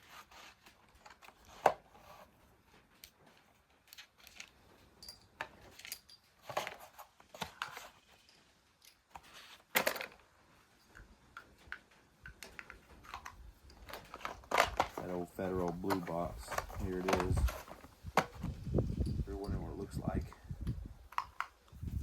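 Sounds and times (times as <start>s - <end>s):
metal cartridges clinking: 3.8s - 17.9s
cardboard box handling rustles: 13.0s - 18.7s.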